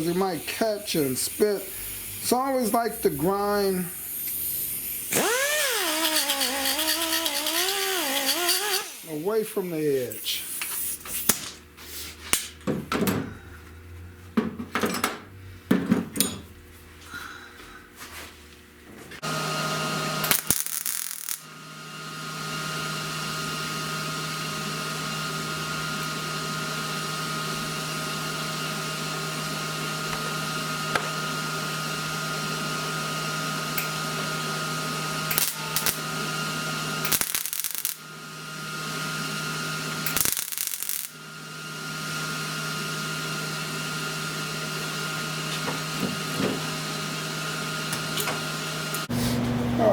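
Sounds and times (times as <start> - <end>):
angle grinder grinding steel: 0.0 - 11.3, 19.2 - 21.4, 33.7 - 41.2.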